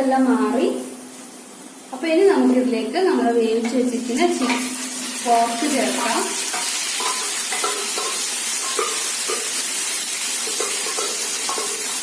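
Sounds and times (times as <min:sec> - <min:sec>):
food sizzling in oil: 0:00.1 - 0:12.0
spoon scraping pan: 0:03.6 - 0:12.0.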